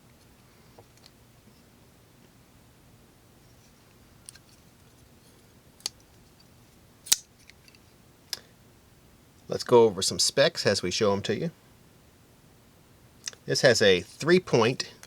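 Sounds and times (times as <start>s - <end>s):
folding knife metallic clicks: 7.1s - 7.3s.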